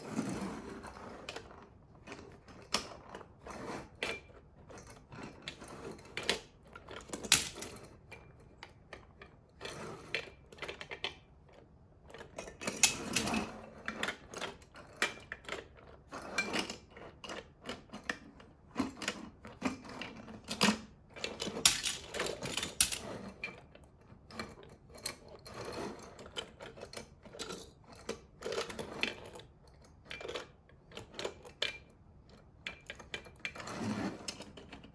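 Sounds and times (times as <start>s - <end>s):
toy cars clicking and clattering: 6.3s - 7.8s, 12.5s - 13.4s, 20.5s - 23.2s.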